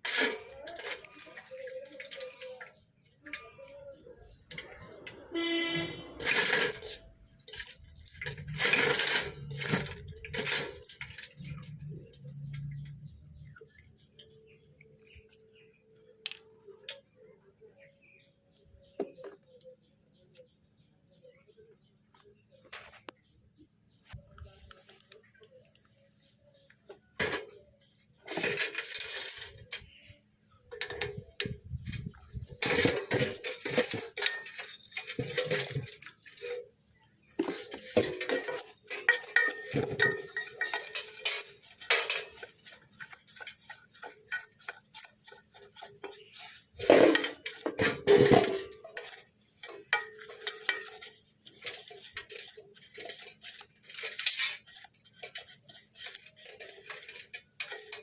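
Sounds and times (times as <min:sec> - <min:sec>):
metal parts clinking and clattering: 0:05.5 - 0:11.5, 0:28.2 - 0:29.8.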